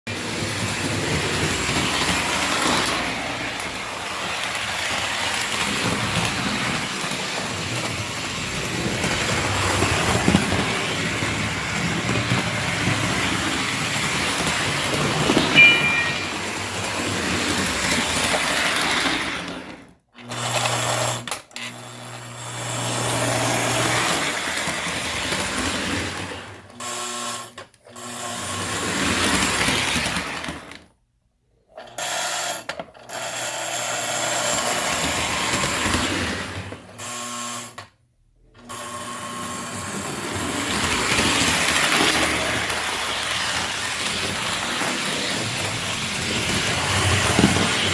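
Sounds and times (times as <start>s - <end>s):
model locomotive motor whirring: 0.2s - 15.4s, 39.4s - 47.9s.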